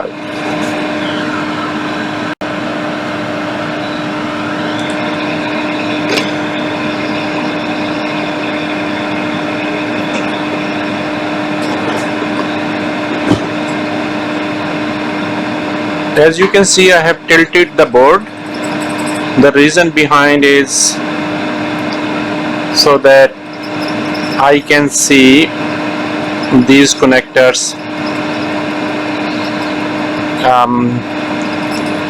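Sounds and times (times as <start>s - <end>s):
electric blower motor whirring: 0.0s - 32.0s.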